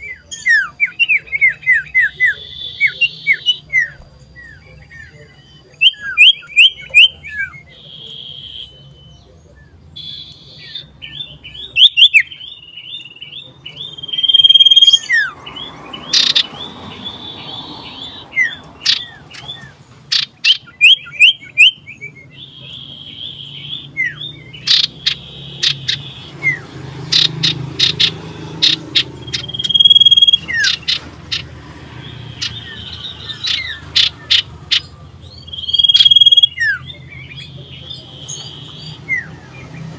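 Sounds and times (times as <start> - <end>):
bird singing shrill chirps and trills: 0.0 - 39.9.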